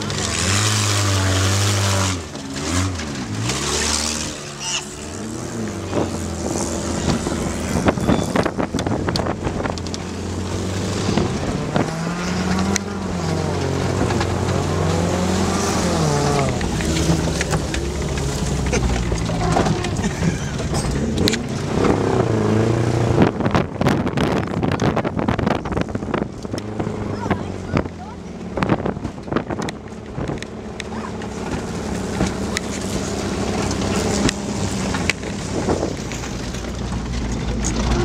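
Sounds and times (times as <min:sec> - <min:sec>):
car engine revving hard: 0:00.0 - 0:27.9.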